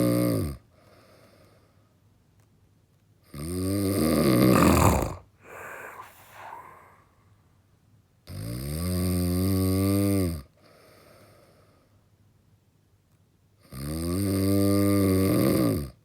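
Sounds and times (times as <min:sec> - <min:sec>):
person snoring heavily: 0:04.0 - 0:07.2
soft breathing: 0:04.5 - 0:07.5.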